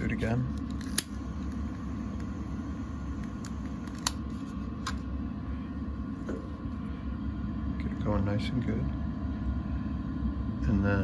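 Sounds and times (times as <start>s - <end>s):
blower motor hum: 0.0s - 11.0s.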